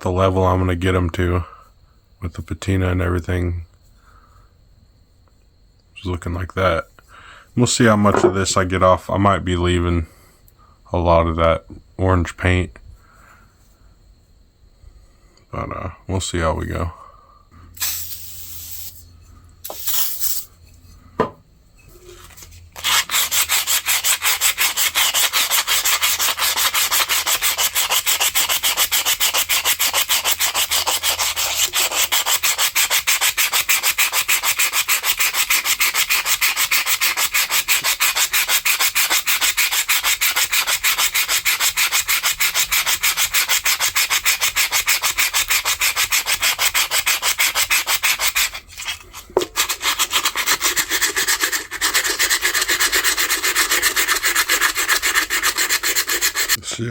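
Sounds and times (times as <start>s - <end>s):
abrasive rubbing on rusty steel: 21.9s - 56.6s.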